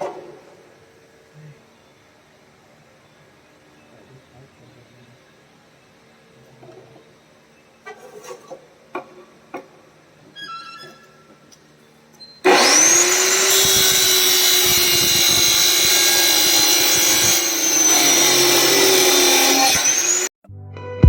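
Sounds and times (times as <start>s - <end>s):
circular saw whining: 12.4s - 20.3s.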